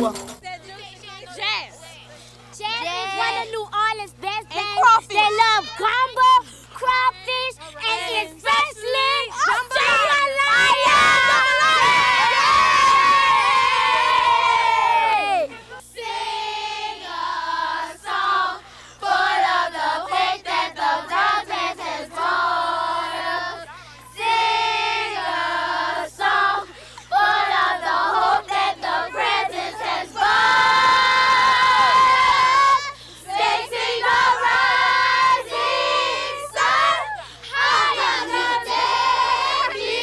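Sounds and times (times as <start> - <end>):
girls singing together: 7.8 - 40.0
loud group cry: 9.4 - 16.6, 24.2 - 40.0.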